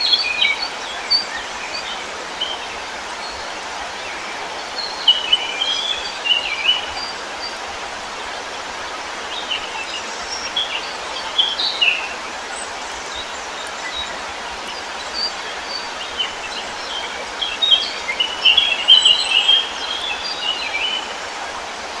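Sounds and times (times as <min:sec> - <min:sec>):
songbirds chirping: 0:00.0 - 0:22.0.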